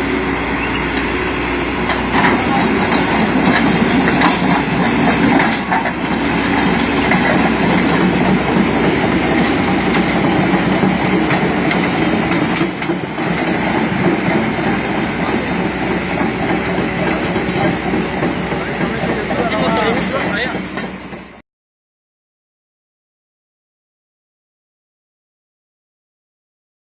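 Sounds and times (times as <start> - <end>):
excavator engine drone: 0.0 - 21.4
metallic clanking of tracks: 0.0 - 21.4.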